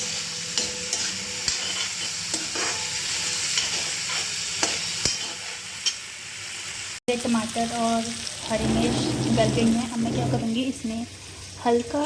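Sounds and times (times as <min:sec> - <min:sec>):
vegetables sizzling in hot oil: 0:00.0 - 0:12.0
utensil scraping against pan: 0:00.9 - 0:06.0, 0:08.5 - 0:10.6.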